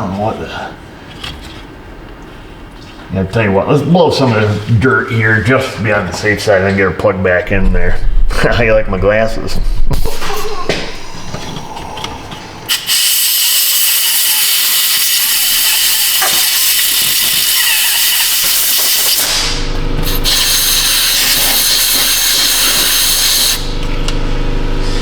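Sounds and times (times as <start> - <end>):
low hum: 7.4 - 12.8
compressed air hissing: 9.9 - 23.8.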